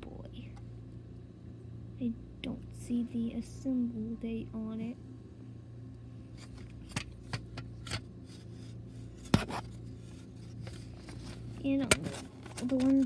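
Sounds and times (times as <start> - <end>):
steady low hum: 0.0 - 13.0
plastic smoke detector handled: 9.2 - 13.0.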